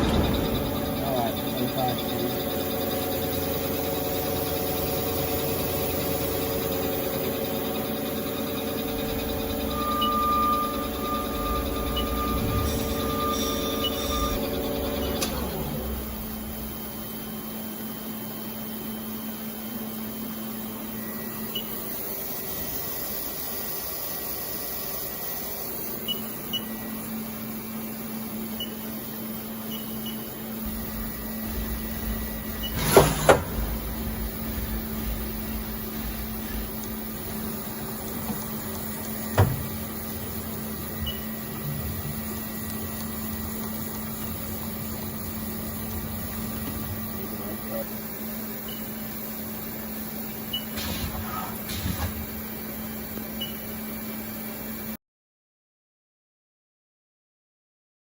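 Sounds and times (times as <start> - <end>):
sharp knocks: 0.0 - 2.6
lathe humming and whining: 0.0 - 53.2.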